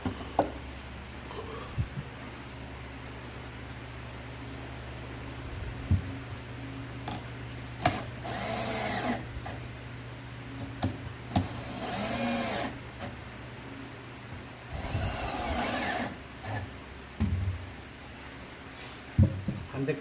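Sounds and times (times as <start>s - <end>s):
electric drill driving screws: 7.8s - 9.6s, 11.4s - 13.1s, 14.7s - 16.7s.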